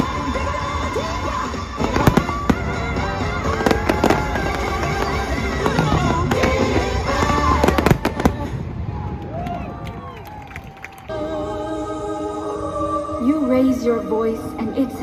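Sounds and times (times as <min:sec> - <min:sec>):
fireworks bangs: 0:00.0 - 0:11.1.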